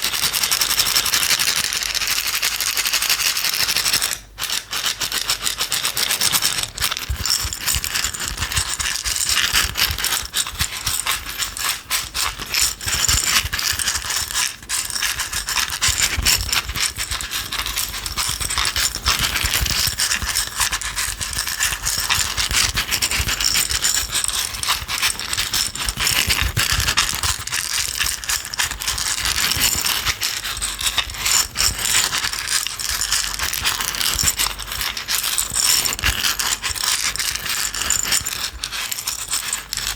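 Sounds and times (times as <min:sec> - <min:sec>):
shaken container rattling: 0:00.0 - 0:39.9.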